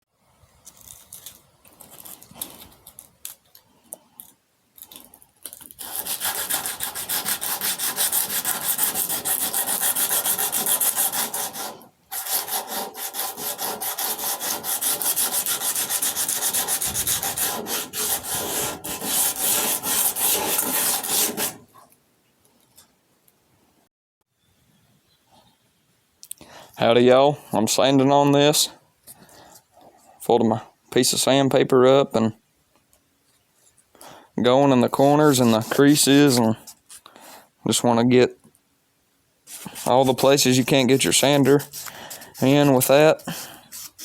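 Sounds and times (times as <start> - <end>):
sanding paint off steel: 5.8 - 21.6, 34.9 - 36.6, 39.5 - 44.0.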